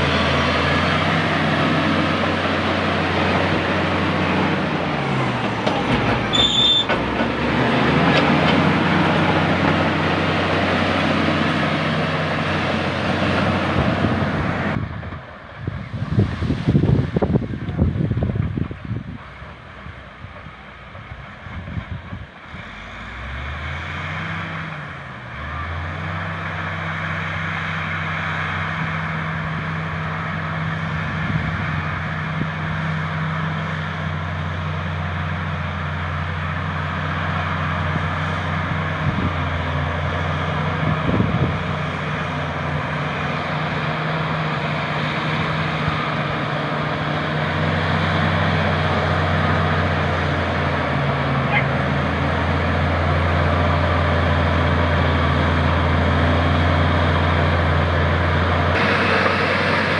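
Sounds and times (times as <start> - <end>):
broad rushing noise: 0.0 - 23.0, 40.6 - 59.9
bulldozer diesel engine revving: 0.0 - 59.9.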